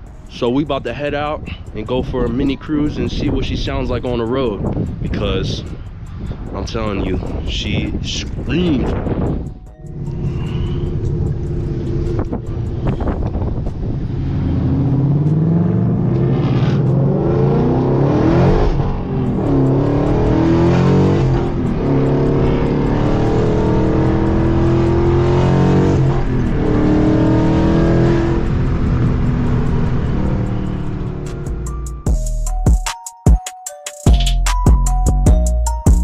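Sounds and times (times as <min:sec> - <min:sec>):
car engine and exhaust accelerating: 0:01.4 - 0:32.1.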